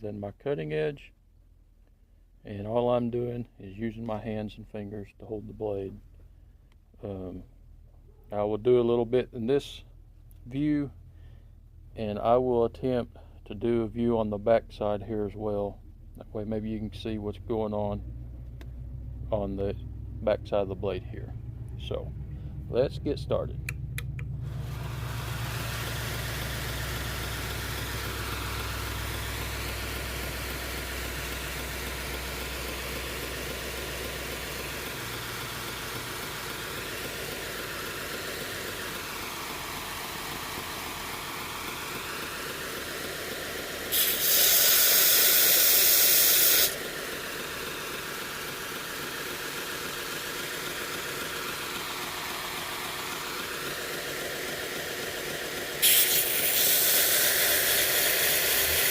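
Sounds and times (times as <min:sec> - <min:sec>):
belt grinder grinding steel blade: 0:43.9 - 0:46.8, 0:55.8 - 0:58.9.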